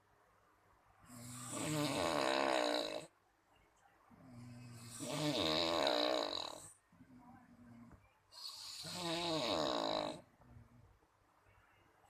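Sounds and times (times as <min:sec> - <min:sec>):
person snoring: 0:01.1 - 0:03.1, 0:04.3 - 0:06.7, 0:08.4 - 0:10.3.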